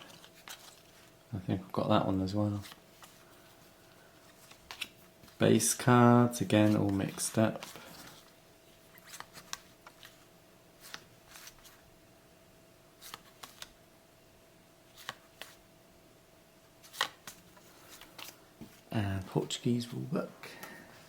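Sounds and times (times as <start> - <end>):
cards clicking and rustling: 0.0 - 1.2, 2.4 - 5.4, 6.4 - 8.3, 8.9 - 11.8, 13.0 - 13.8, 14.9 - 15.6, 16.8 - 18.9.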